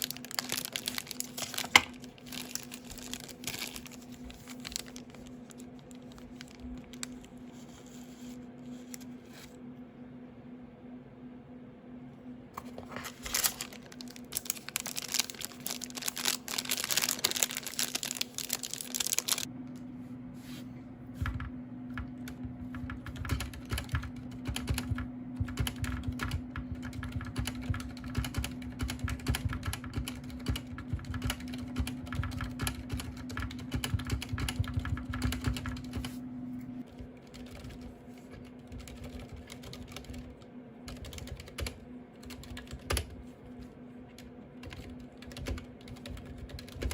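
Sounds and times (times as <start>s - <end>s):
low steady hum: 0.0s - 46.9s
mechanical keyboard typing: 21.2s - 36.1s, 37.0s - 43.2s, 44.2s - 46.9s.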